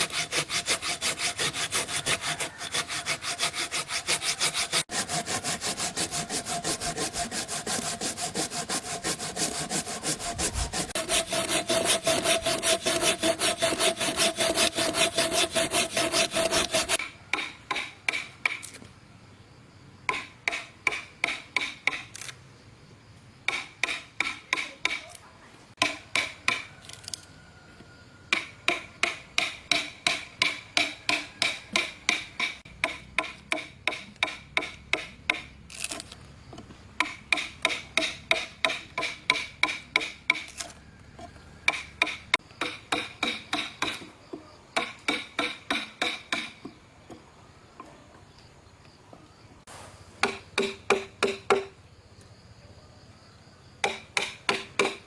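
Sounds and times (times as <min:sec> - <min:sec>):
hand tool striking wood: 0:00.0 - 0:18.8, 0:20.1 - 0:22.1, 0:23.5 - 0:25.2, 0:25.8 - 0:26.7, 0:28.3 - 0:36.0, 0:36.6 - 0:40.7, 0:41.7 - 0:47.2, 0:50.2 - 0:51.8, 0:53.8 - 0:55.0.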